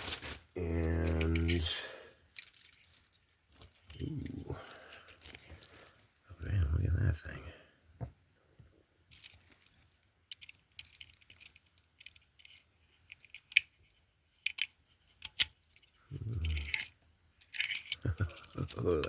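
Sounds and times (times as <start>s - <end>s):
metal lock clicking and clinking: 14.5s - 15.6s, 16.4s - 19.0s.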